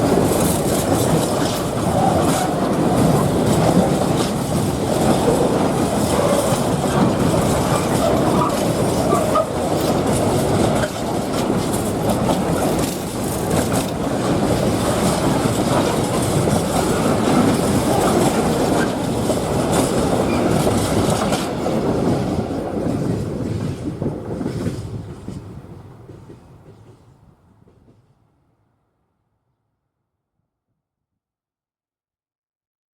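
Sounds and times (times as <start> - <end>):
wheels clattering over rail joints: 0.0 - 23.8
train wheel squeals: 19.6 - 21.6.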